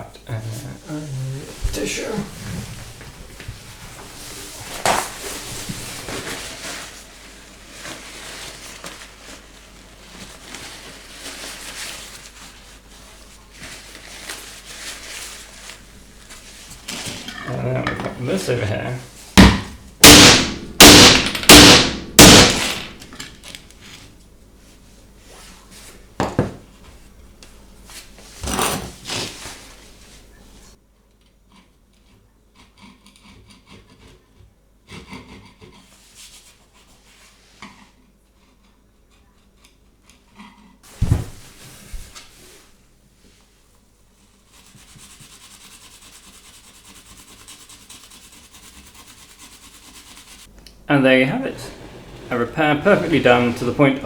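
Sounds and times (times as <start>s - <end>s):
rubbing on laminate floor: 0.5s - 17.3s, 27.9s - 30.8s, 44.1s - 50.6s, 51.2s - 54.0s.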